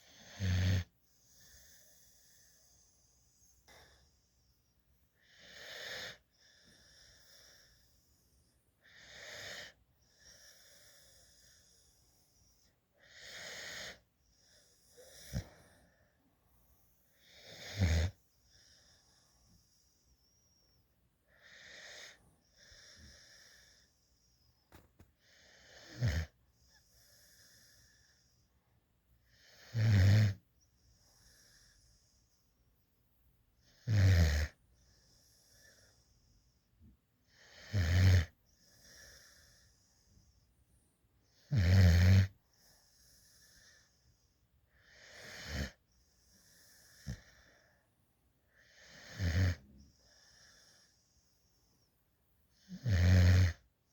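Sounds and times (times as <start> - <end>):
puppy snoring: 0.0 - 4.0, 5.2 - 8.1, 8.8 - 16.0, 17.1 - 20.7, 21.3 - 23.9, 24.7 - 28.3, 29.3 - 32.2, 33.6 - 36.1, 37.3 - 39.9, 41.3 - 44.0, 44.8 - 47.6, 48.6 - 51.0, 52.5 - 53.7
soft breathing: 1.0 - 29.4, 38.4 - 41.3, 42.4 - 49.0, 49.6 - 52.2.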